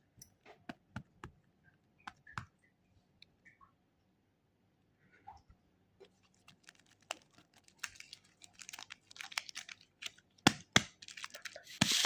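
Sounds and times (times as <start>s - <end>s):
plastic wrapper crinkling: 6.0s - 12.0s.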